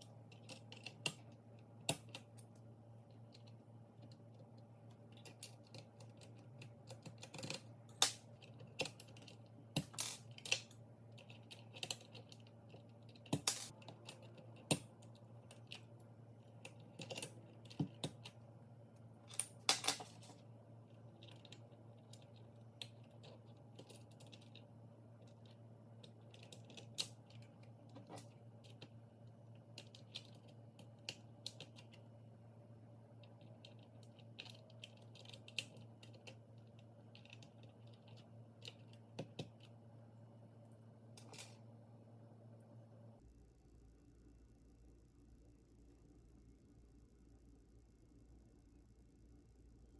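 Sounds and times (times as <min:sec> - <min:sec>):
mechanical keyboard typing: 0:33.2 - 0:39.7.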